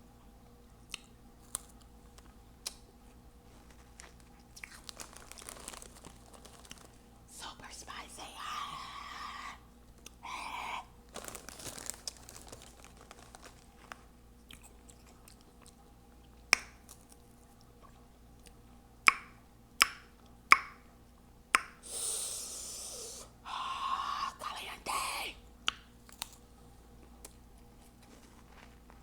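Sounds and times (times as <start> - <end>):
soft chewing: 0.2 - 18.9, 25.4 - 29.0.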